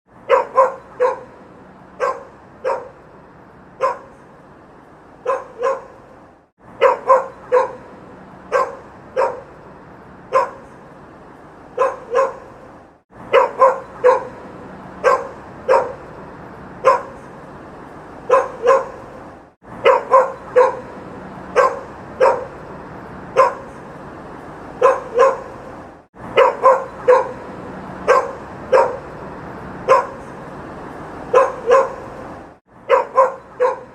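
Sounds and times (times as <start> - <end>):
city street background noise: 0.0 - 33.9
dog barking: 0.2 - 1.4, 2.0 - 3.0, 3.8 - 4.3, 5.2 - 6.0, 6.8 - 7.9, 8.5 - 9.6, 10.3 - 10.8, 11.7 - 12.6, 13.3 - 14.4, 15.0 - 16.1, 16.8 - 17.3, 18.2 - 19.1, 19.8 - 22.6, 23.3 - 23.8, 24.8 - 25.6, 26.3 - 29.1, 29.8 - 30.3, 31.3 - 32.2, 32.8 - 33.9.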